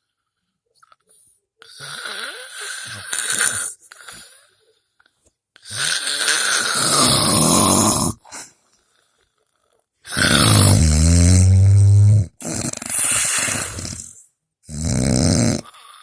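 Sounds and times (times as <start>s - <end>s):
loud whistling snoring: 5.7s - 8.2s, 10.1s - 14.1s, 14.7s - 16.0s.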